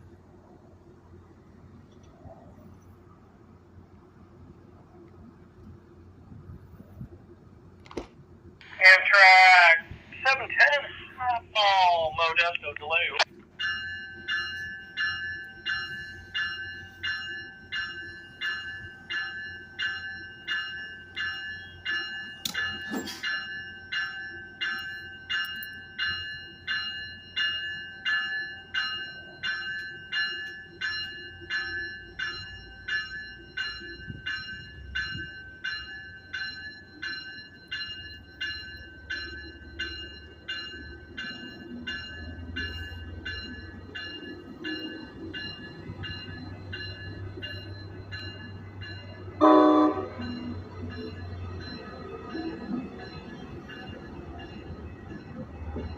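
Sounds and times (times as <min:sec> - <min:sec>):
low train rumble: 0:00.0 - 0:55.9
train bell ringing: 0:08.6 - 0:55.9
train horn blast: 0:49.4 - 0:50.1.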